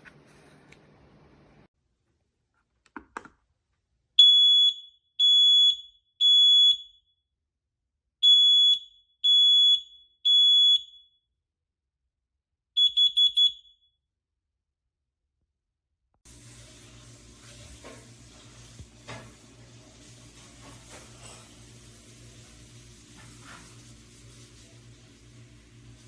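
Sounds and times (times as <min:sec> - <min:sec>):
smoke alarm beeping: 0:04.2 - 0:07.1, 0:08.2 - 0:11.2, 0:12.8 - 0:13.9.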